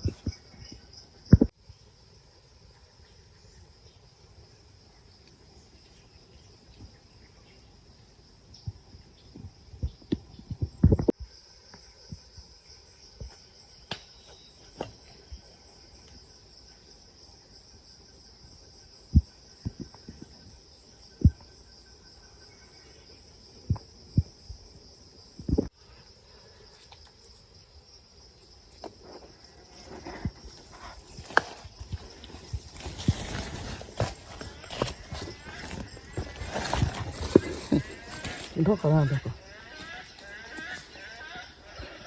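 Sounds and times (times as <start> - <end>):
insects chirring: 0.0 - 42.0.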